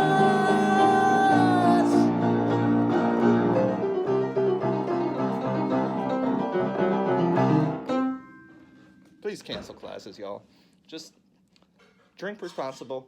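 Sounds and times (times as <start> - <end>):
keyboard instrumental music: 0.0 - 9.1.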